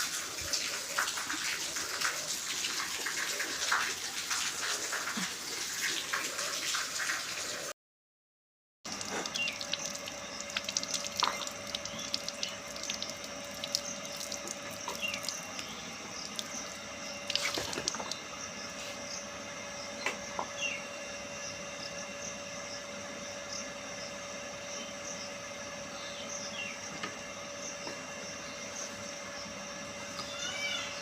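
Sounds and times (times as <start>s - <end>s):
water drips and splashes: 0.0s - 7.7s, 8.9s - 18.3s
water running and trickling: 0.0s - 7.7s, 8.9s - 18.7s.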